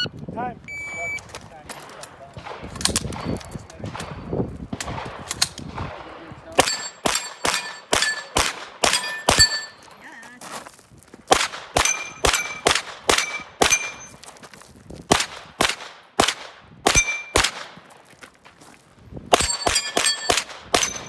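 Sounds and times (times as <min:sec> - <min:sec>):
gunshots: 0:00.9 - 0:09.8, 0:11.3 - 0:14.1, 0:15.1 - 0:17.8, 0:19.3 - 0:21.0
steel plate ringing: 0:06.6 - 0:09.9, 0:13.2 - 0:14.2.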